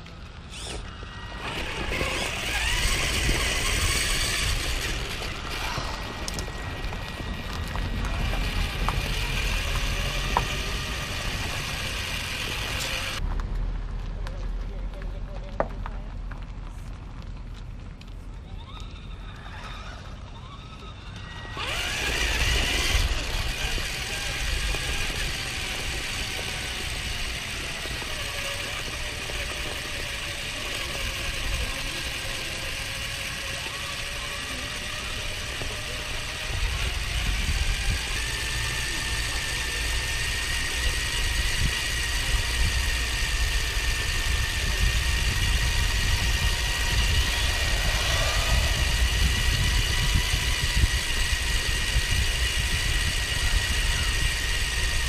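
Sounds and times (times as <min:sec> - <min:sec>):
car engine and road rumble: 0:00.0 - 0:55.0
faint whining tones: 0:42.0 - 0:55.0.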